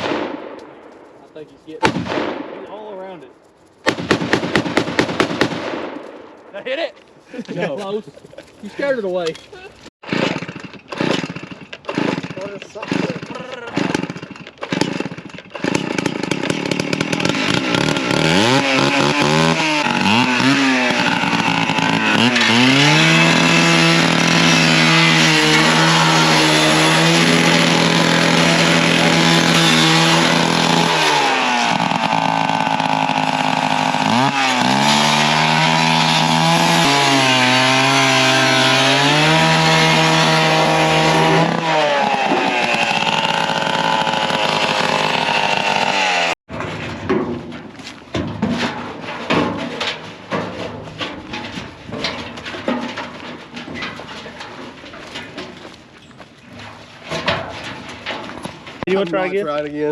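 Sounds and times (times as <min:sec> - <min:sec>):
engine revving hard: 0:15.6 - 0:46.4.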